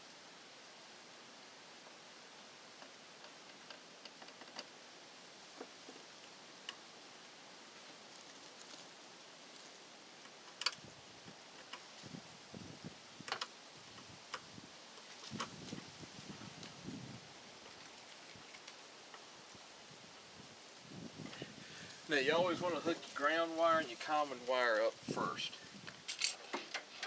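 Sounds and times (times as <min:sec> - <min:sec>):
rustling handling noise: 0:21.3 - 0:27.0
tools clicking: 0:26.1 - 0:26.4.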